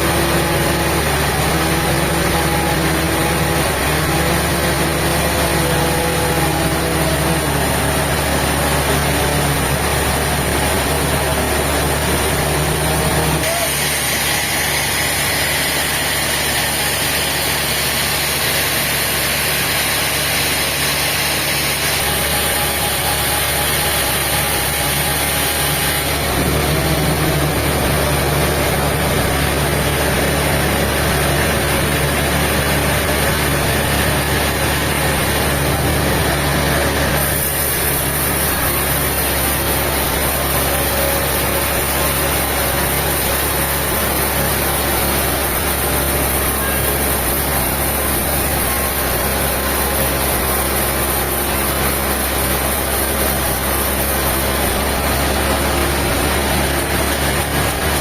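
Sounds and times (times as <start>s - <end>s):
heavy machinery engine running: 0.0s - 58.0s.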